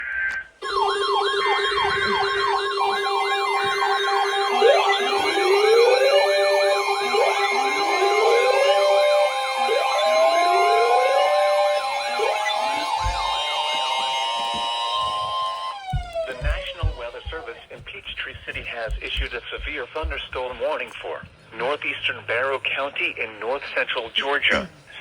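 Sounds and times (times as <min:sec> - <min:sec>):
fast yelp siren: 0:00.6 - 0:17.5
wailing siren: 0:00.6 - 0:17.5
steady siren tones: 0:00.6 - 0:19.4.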